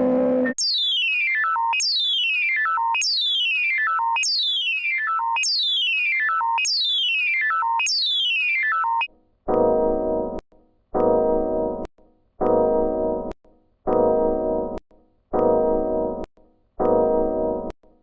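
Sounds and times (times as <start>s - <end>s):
electronic alert tone: 0.0s - 9.1s.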